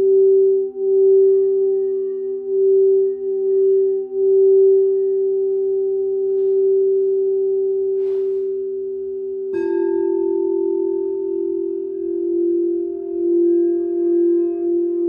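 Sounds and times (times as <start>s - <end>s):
singing bowl ringing: 0.0s - 15.0s
singing bowl struck: 5.9s - 15.0s.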